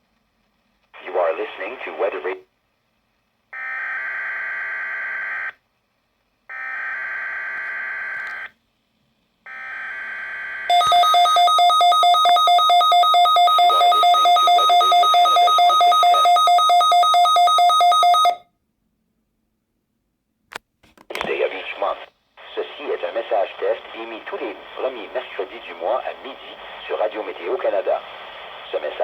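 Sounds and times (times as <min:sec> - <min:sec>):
two-tone attention signal: 0:10.7 - 0:18.4.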